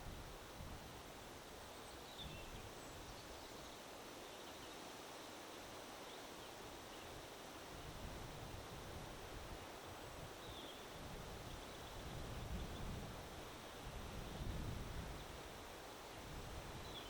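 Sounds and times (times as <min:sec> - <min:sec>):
wind: 0:00.0 - 0:17.0
faint bird chirps: 0:01.7 - 0:07.3, 0:10.4 - 0:13.0, 0:16.8 - 0:17.0.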